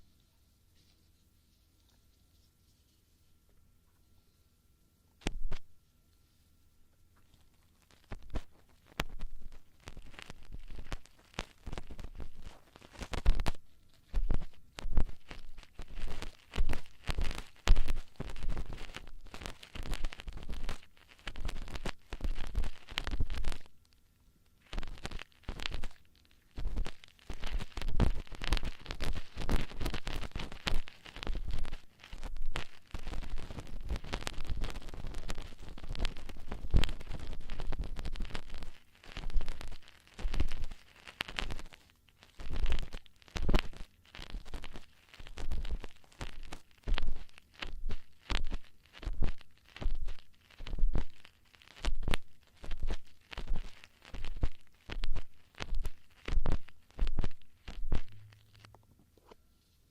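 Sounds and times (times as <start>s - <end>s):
ear-cleaning tools scraping microphone: 7.8s - 23.7s, 24.6s - 59.4s.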